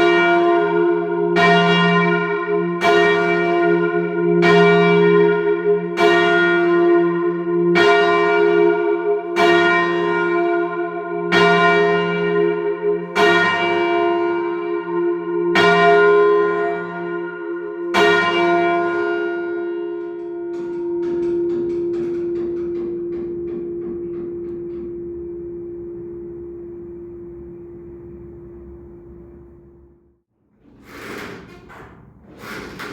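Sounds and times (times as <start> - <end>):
heavy church bell ringing: 0.0 - 30.0.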